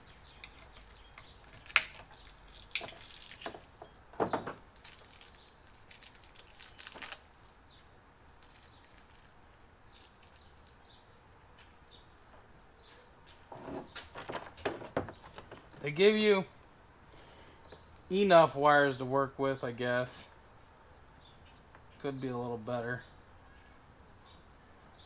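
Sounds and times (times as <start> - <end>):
clicks and knocks of small parts: 0.3 - 7.6.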